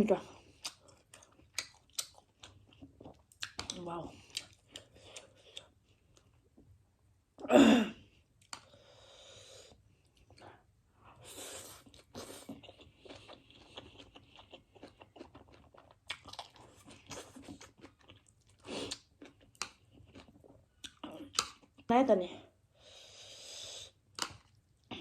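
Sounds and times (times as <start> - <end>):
wet chewing: 0.3 - 6.6, 11.2 - 21.9, 24.1 - 24.9.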